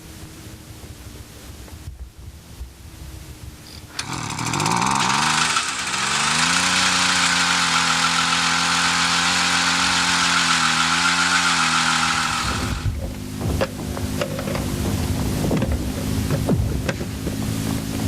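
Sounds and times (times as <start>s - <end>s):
small gasoline engine revving: 3.9s - 16.5s.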